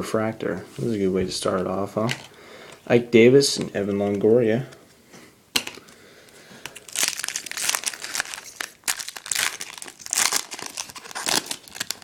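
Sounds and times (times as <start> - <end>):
foil wrapper crinkling: 6.6 - 12.0.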